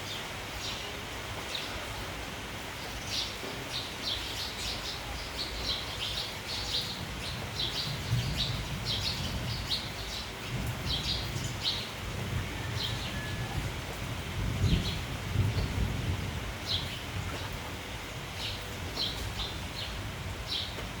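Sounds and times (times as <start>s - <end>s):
rain hissing: 0.0s - 21.0s
sparrows chirping: 2.8s - 12.0s, 16.6s - 17.5s, 18.2s - 20.8s.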